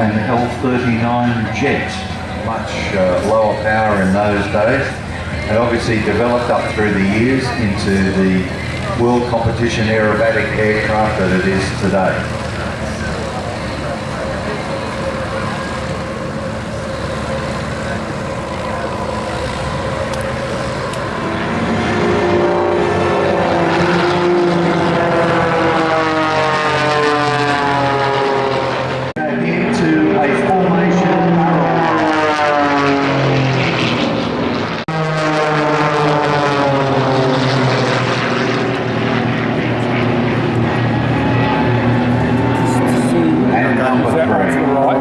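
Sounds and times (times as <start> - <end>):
propeller aircraft engine drone: 0.0 - 45.0.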